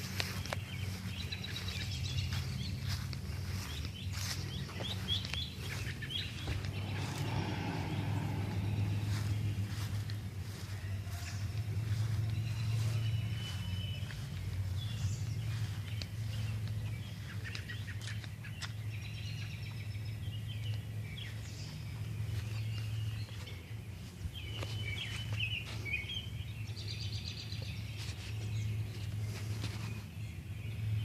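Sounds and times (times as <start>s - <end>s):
small birds chirping: 0.0s - 31.0s
steady low hum: 0.7s - 17.1s.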